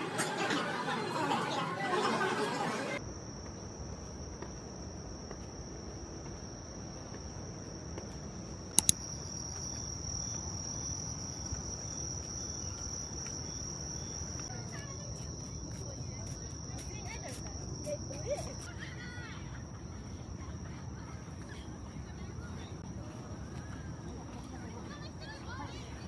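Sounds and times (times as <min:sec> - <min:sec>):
crowd chatter: 0:00.0 - 0:03.0
pulsing insect chirp: 0:03.0 - 0:18.8
crickets droning: 0:03.0 - 0:26.0
sharp clicks: 0:08.7 - 0:09.0.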